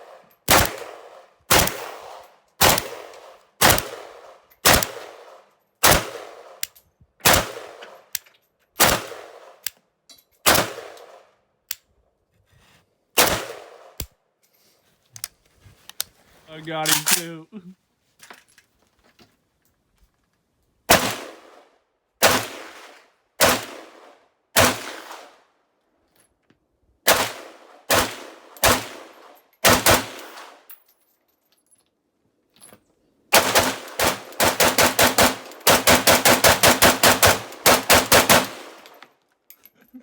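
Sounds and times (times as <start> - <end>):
rifle shots with echo: 0.0 - 6.6, 7.2 - 8.0, 8.8 - 9.6, 10.5 - 11.2, 13.2 - 14.0, 20.9 - 21.6, 22.2 - 25.4, 27.1 - 30.6, 33.3 - 38.8
rapid rifle fire: 0.5 - 6.6, 7.2 - 7.8, 8.8 - 9.5, 27.1 - 30.4, 33.3 - 38.8.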